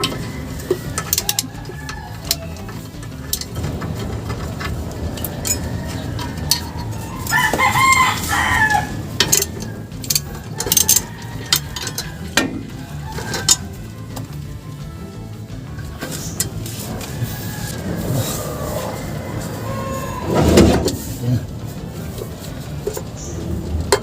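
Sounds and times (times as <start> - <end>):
rooster crowing: 0.0 - 14.1, 16.6 - 21.2
sharp clicks and knocks: 0.0 - 17.9, 21.8 - 24.0.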